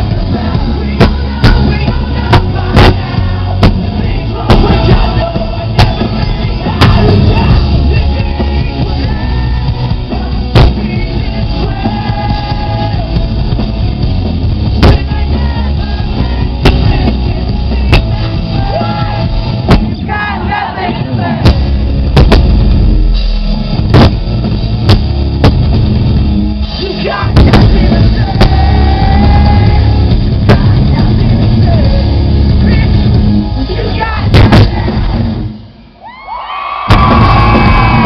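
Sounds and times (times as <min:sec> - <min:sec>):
person singing: 0:00.0 - 0:13.4, 0:14.8 - 0:21.5, 0:26.8 - 0:33.0
live rock band playing: 0:00.0 - 0:38.0.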